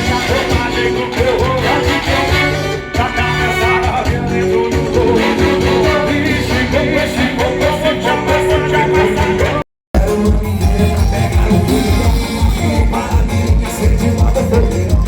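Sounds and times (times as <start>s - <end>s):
amplified music with singing: 0.0s - 15.0s
steady bass beat: 3.2s - 15.0s.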